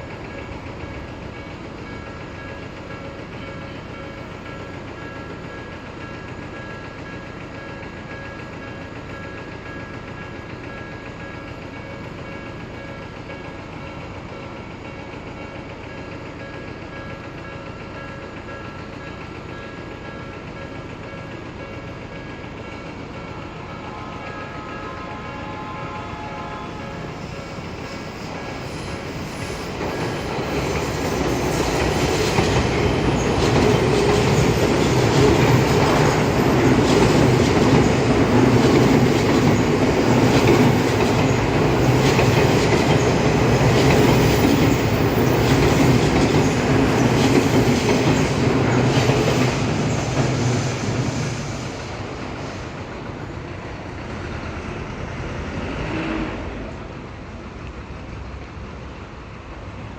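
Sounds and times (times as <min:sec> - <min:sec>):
electric train passing: 0:00.0 - 0:59.9
crossing warning bell ringing: 0:15.8 - 0:48.8.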